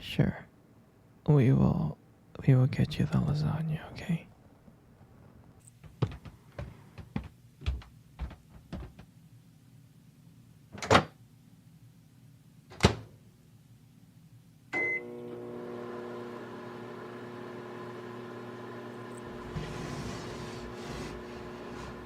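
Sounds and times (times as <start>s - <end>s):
microwave oven humming: 14.7s - 22.0s.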